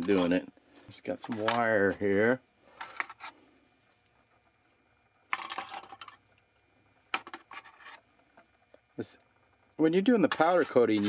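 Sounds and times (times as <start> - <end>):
wire clinking and rustling: 5.3 - 6.4.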